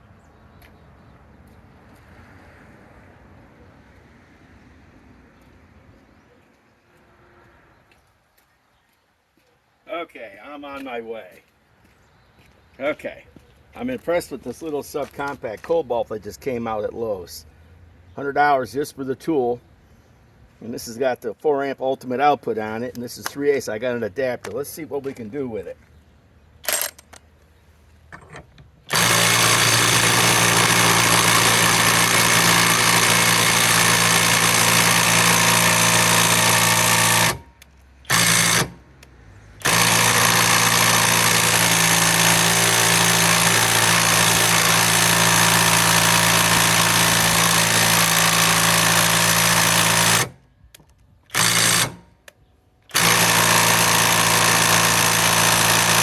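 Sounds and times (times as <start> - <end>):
impact wrench hammering: 28.2 - 38.9, 39.6 - 50.4, 51.3 - 52.3, 52.9 - 56.0.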